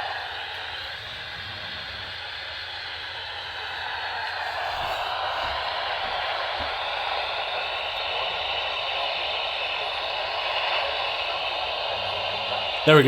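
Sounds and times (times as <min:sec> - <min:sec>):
radio static hiss: 0:05.4 - 0:13.0.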